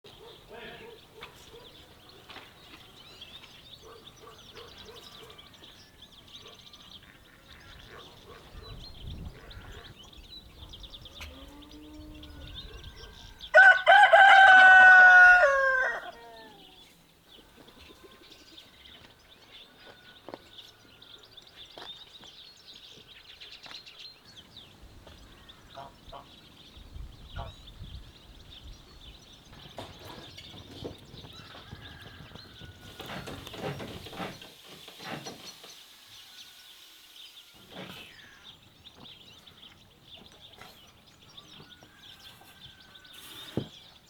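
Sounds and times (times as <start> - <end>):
rooster crowing: 13.4 - 16.7, 31.3 - 33.2.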